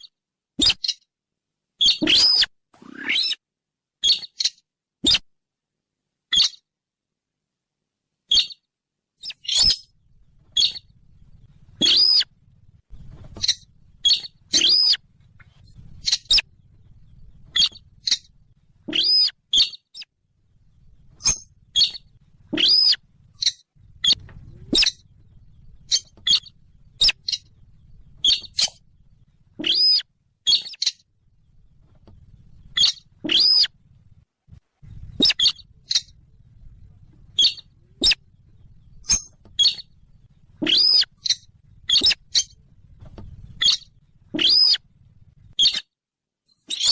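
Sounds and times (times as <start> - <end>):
sharp bird lure calls: 1.8 - 3.4, 8.3 - 8.6, 9.2 - 9.9, 10.5 - 10.8, 11.8 - 12.3, 13.4 - 16.5, 17.5 - 20.1, 21.2 - 25.0, 25.8 - 27.5, 28.2 - 28.8, 29.6 - 31.0, 32.7 - 33.8, 35.1 - 36.2, 37.4 - 38.2, 39.0 - 39.9, 40.6 - 42.6, 43.6 - 44.8, 45.5 - 45.9, 46.6 - 46.9.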